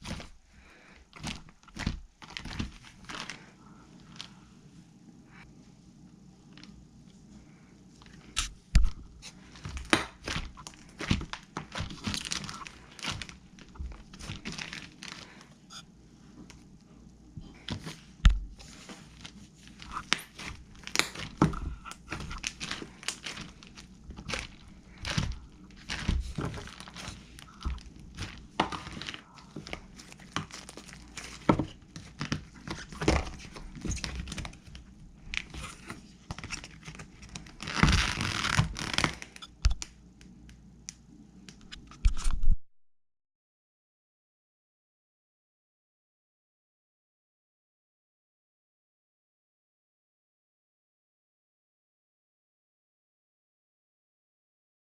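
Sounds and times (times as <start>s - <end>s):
slime popping and crackling: 9.6s - 15.2s, 19.8s - 34.5s, 36.4s - 39.8s.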